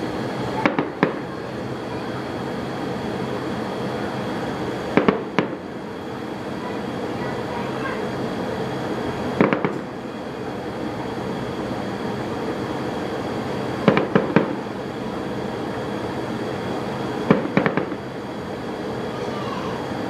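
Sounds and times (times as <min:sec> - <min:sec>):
fireworks bursting with sharp bangs: 0:00.0 - 0:01.5, 0:04.6 - 0:05.7, 0:09.2 - 0:10.0, 0:13.4 - 0:14.8, 0:17.1 - 0:18.1
steady background noise: 0:00.0 - 0:20.0.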